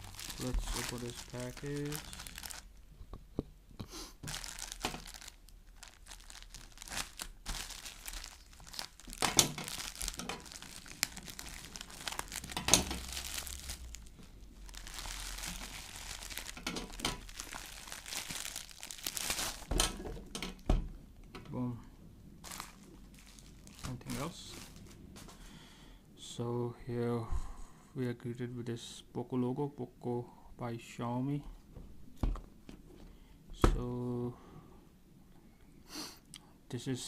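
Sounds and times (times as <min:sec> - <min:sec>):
wrapping crinkling and rustling: 0:00.0 - 0:02.9, 0:04.2 - 0:20.6, 0:22.4 - 0:25.6
package tearing: 0:04.2 - 0:14.1, 0:14.7 - 0:19.8.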